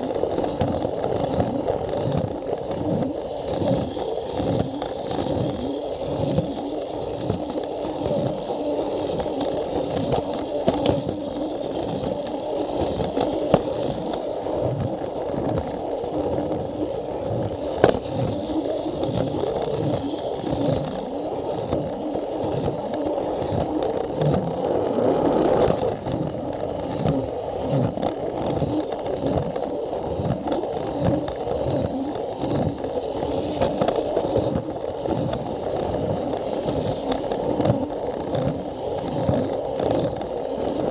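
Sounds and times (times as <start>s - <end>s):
toy train motor running: 0.0s - 25.8s.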